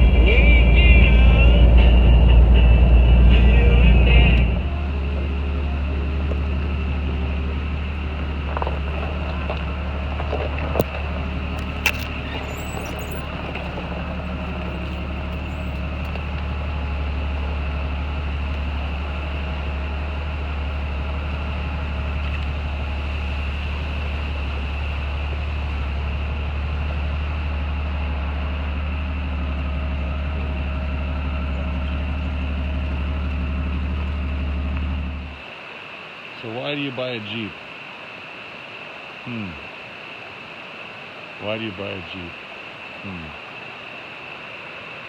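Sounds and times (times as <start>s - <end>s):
vehicle engine and road drone: 0.0s - 45.0s
sharp clicks: 8.4s - 16.5s.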